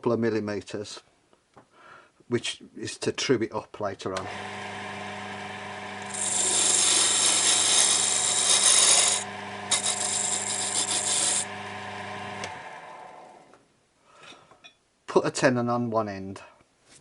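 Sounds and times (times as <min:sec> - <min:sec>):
lathe motor humming: 0:04.2 - 0:13.5
tool cutting spinning wood: 0:04.2 - 0:13.5.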